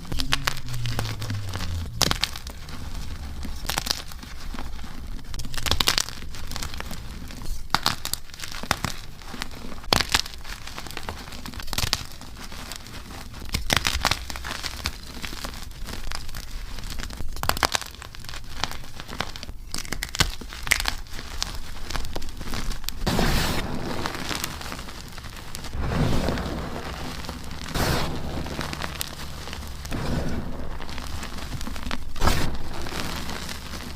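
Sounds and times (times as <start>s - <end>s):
chalk blocks crunching and crumbling: 0.0s - 33.9s.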